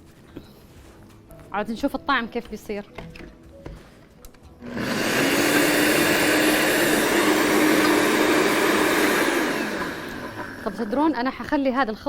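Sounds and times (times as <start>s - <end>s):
electric blender motor humming: 4.6s - 11.1s.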